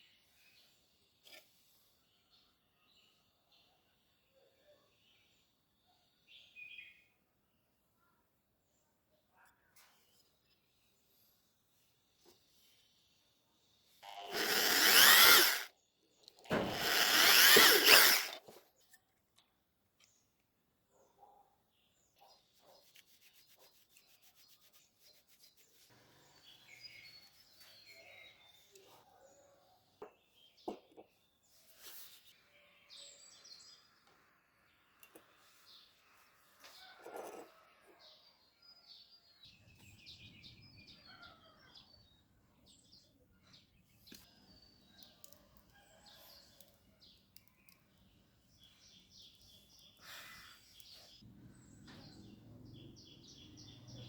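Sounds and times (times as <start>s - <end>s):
faint bird chirps: 34.7s - 54.0s.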